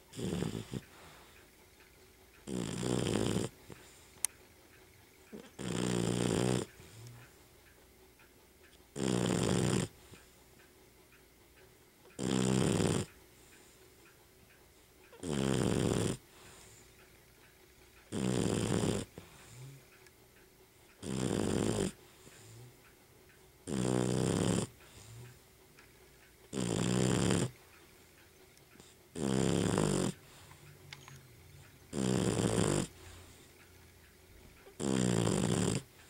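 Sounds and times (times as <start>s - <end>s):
dog breathing quietly: 0.0s - 7.6s, 8.9s - 10.7s, 12.2s - 23.0s, 23.6s - 25.6s, 28.7s - 36.0s
dog snoring loudly: 0.1s - 1.3s, 2.4s - 4.0s, 5.3s - 7.1s, 8.9s - 10.0s, 12.2s - 13.1s, 15.2s - 16.8s, 18.1s - 19.8s, 21.0s - 22.7s, 23.6s - 25.4s, 26.5s - 27.6s, 28.8s - 30.5s, 31.9s - 33.5s, 34.8s - 36.0s.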